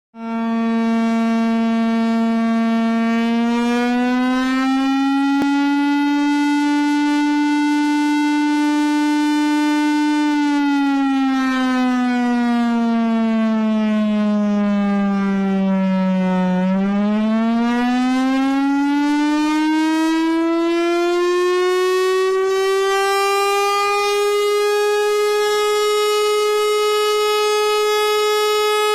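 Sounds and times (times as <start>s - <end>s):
alarm siren rising and falling: 0.2s - 28.9s.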